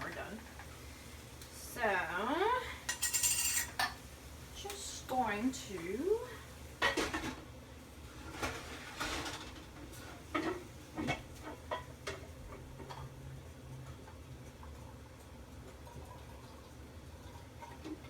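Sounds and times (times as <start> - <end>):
utensils clinking against pan: 2.9 - 4.0.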